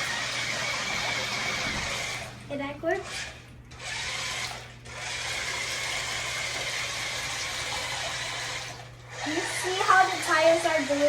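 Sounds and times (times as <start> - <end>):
toy boat motors whining: 0.0 - 11.0
tires churning water: 5.6 - 11.0.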